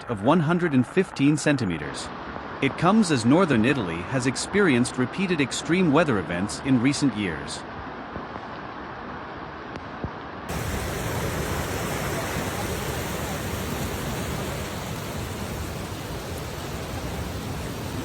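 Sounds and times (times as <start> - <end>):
floodwater rushing: 10.5 - 18.0.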